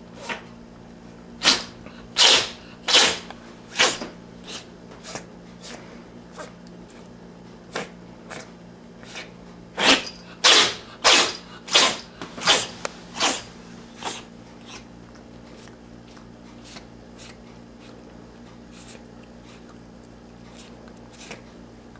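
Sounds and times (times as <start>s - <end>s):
cat sneezing: 0.2s - 0.5s, 1.4s - 5.8s, 7.7s - 14.9s.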